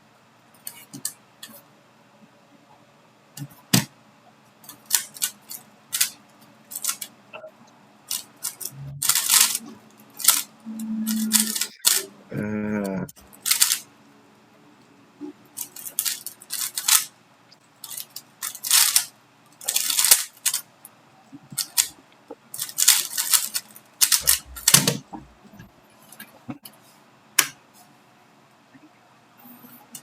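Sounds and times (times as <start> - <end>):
puzzle cube plastic clicking: 8.1 - 9.6, 17.9 - 19.1.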